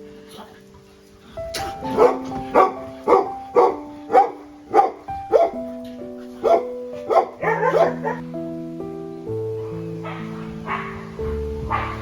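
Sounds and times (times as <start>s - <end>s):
background music: 0.0s - 12.0s
dog barking: 1.6s - 5.8s, 6.4s - 8.2s, 9.6s - 12.0s.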